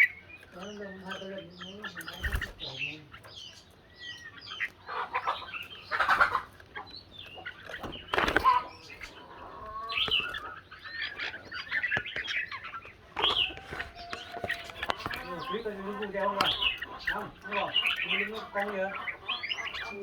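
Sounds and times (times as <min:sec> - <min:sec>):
bulbuls chirping and singing: 0:00.0 - 0:20.0.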